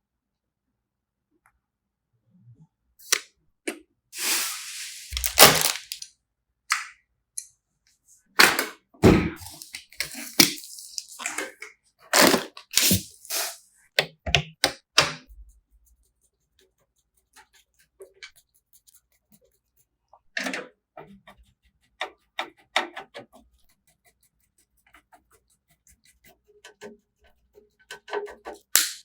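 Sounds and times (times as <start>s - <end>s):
rustling and scraping: 4.2s - 6.0s, 12.2s - 13.6s.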